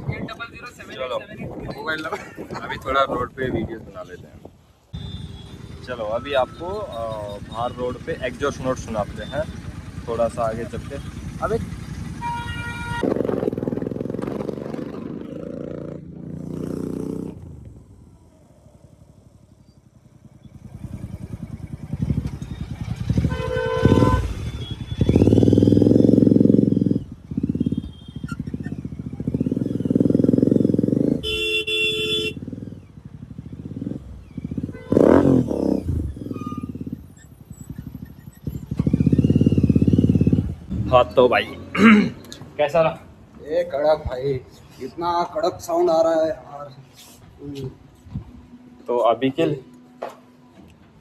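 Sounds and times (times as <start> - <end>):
motorcycle engine revving: 5.0 - 42.6
horn sounding: 10.7 - 13.1, 22.0 - 29.6, 31.0 - 32.6, 34.5 - 37.0.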